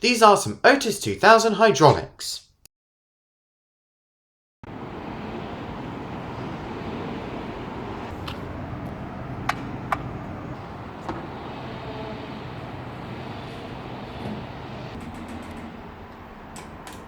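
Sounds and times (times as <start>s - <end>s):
traffic and vehicles: 4.6s - 17.0s.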